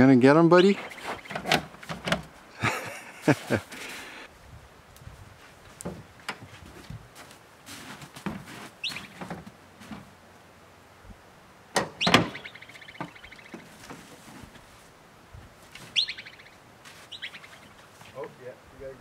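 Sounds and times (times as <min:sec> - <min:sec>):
knocks and scrapes: 0:07.7 - 0:10.1, 0:13.5 - 0:14.9.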